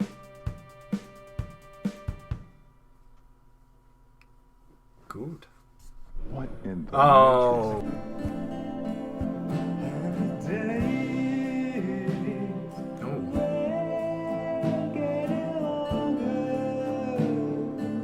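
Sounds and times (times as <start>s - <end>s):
guitar accompaniment: 0.0s - 2.5s, 7.0s - 18.0s
man singing long notes: 7.0s - 18.0s.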